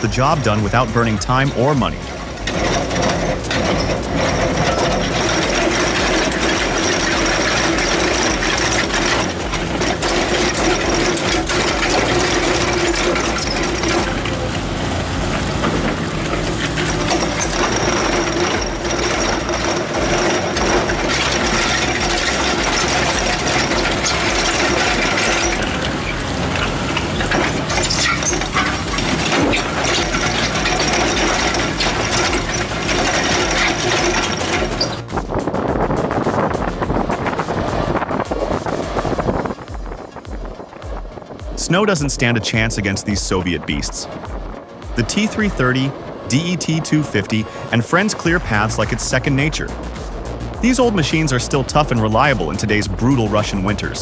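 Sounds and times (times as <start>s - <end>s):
heavy machine engine running: 0.0s - 41.5s, 43.6s - 54.0s
metallic clanking of tracks: 0.0s - 42.1s.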